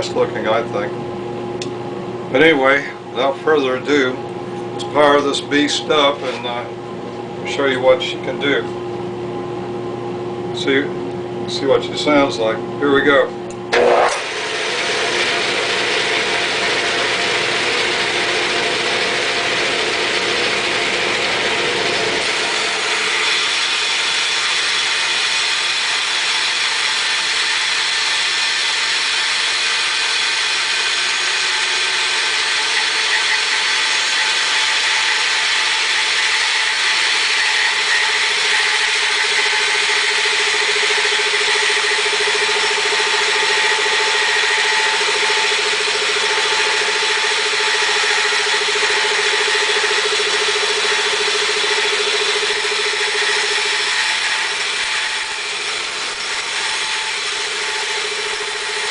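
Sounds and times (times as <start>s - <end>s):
band saw cutting wood: 4.8s - 6.7s, 13.7s - 58.9s.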